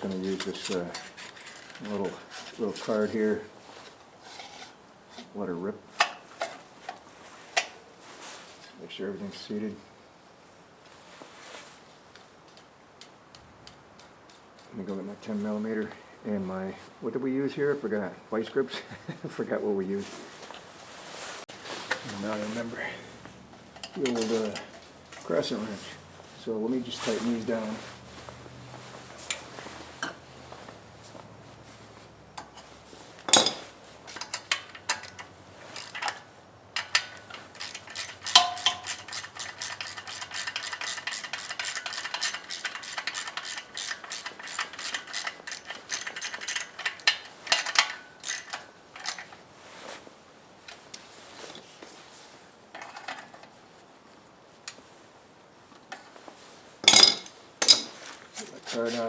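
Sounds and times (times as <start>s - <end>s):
rapid ratchet clicking: 35.8s - 36.1s, 36.8s - 49.2s
sharp metallic clanks: 36.8s - 49.2s.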